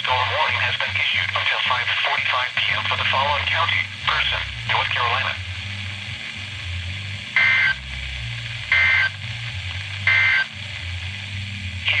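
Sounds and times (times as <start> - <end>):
two-tone digital data bursts: 10.1 - 10.5.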